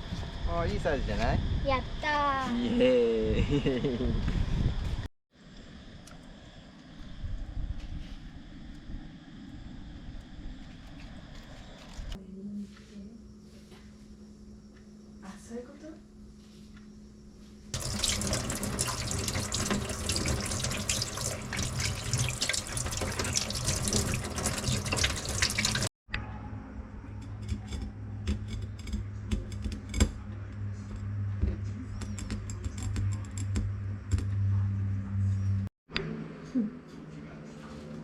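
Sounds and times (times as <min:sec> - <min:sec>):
water running and splashing: 0:17.8 - 0:25.9.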